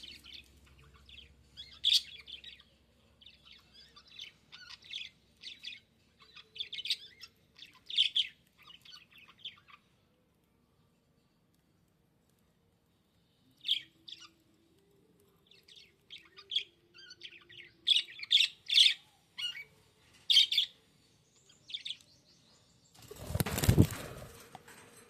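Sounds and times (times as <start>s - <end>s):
loud rustling: 23.0s - 25.0s.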